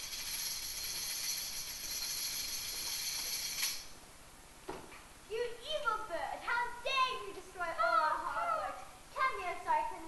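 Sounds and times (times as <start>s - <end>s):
jingling percussion shaken: 0.0s - 3.9s
soft knock: 4.7s - 5.0s.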